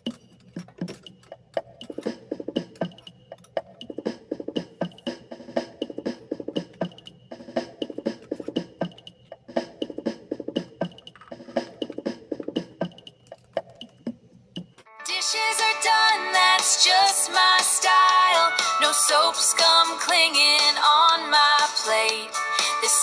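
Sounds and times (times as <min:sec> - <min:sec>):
instrumental music with drum beat: 0:00.0 - 0:14.8.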